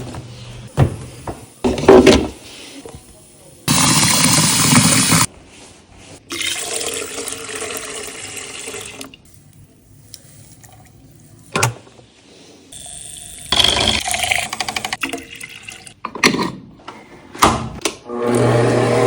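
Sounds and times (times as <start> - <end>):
water running into container: 3.7 - 5.3, 6.3 - 9.2, 13.2 - 16.0.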